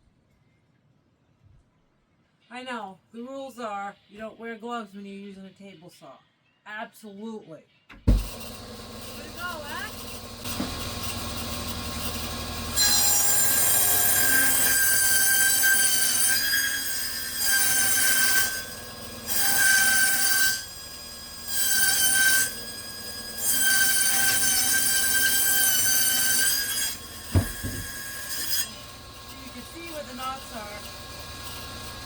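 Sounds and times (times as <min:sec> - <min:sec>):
table saw cutting wood: 0:08.1 - 0:32.0.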